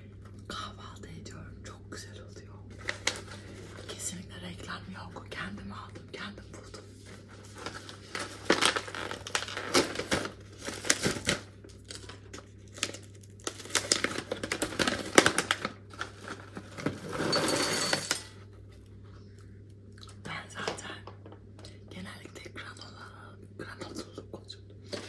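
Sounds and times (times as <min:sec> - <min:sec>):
steady plastic rustle: 0:02.7 - 0:04.0, 0:06.7 - 0:17.4
plastic packaging crinkling: 0:02.8 - 0:04.0, 0:07.0 - 0:17.2.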